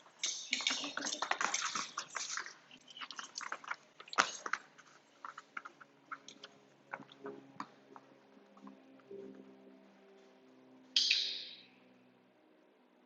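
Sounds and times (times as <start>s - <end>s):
dog crunching a treat: 0.2s - 7.4s.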